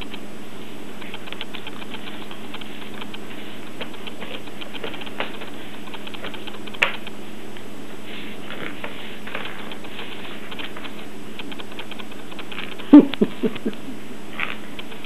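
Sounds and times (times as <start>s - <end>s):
steady background hum: 0.0s - 15.0s
puppy chewing and gnawing: 1.0s - 7.2s, 8.5s - 13.0s.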